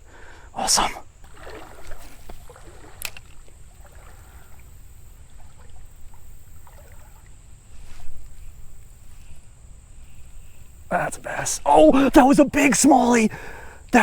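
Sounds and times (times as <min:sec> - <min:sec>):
water trickling in a creek: 0:01.0 - 0:14.0
sharp water splashes: 0:01.1 - 0:09.1.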